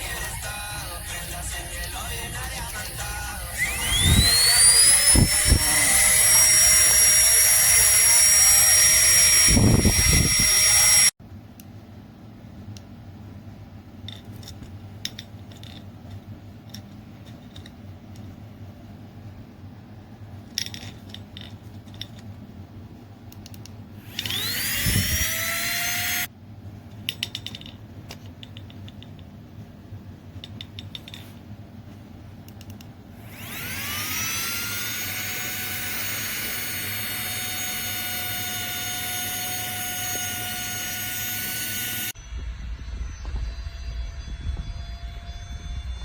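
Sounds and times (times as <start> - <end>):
air pump motor whining: 3.1 - 11.2, 24.0 - 26.3, 33.2 - 46.0.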